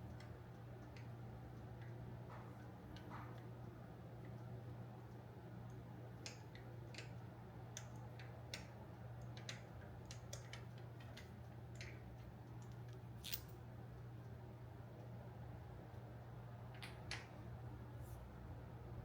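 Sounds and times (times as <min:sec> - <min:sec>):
light clicks and taps: 0:00.0 - 0:04.5, 0:05.1 - 0:14.4.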